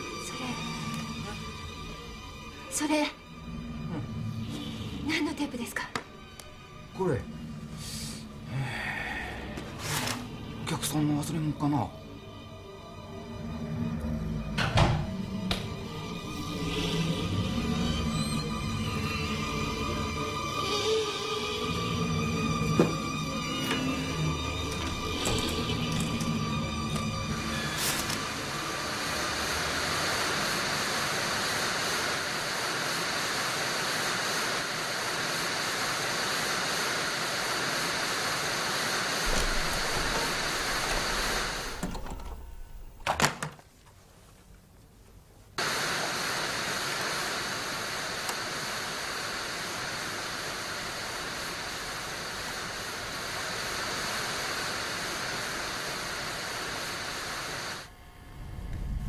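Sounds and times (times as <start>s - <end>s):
television static hiss: 17.8s - 58.0s.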